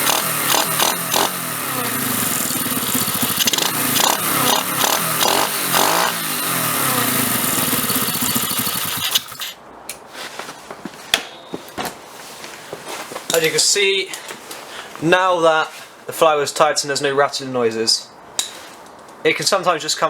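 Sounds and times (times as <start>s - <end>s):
pit bike engine revving: 0.0s - 9.6s.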